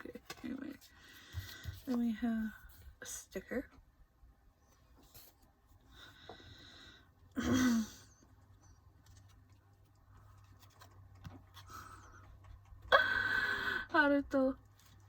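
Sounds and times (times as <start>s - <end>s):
paper rustling: 9.0s - 12.2s.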